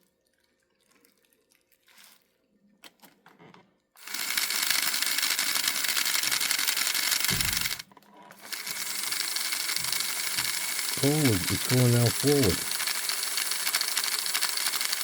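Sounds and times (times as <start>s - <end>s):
model train motor whirring: 4.0s - 15.0s
low thump: 7.3s - 7.7s.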